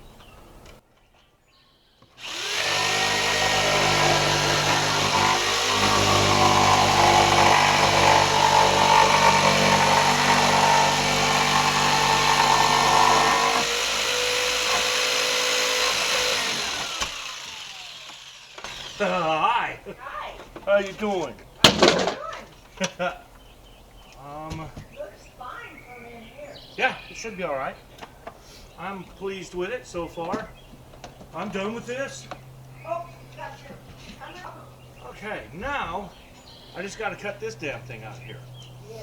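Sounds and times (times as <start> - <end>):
electric saw cutting wood: 2.2 - 19.4.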